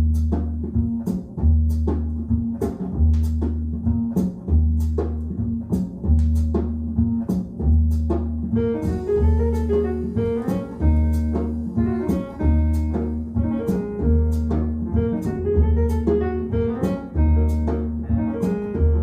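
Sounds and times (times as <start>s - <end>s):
jazz drums: 0.0s - 19.0s
upright bass: 0.0s - 19.0s
guitar or piano melody: 8.5s - 19.0s.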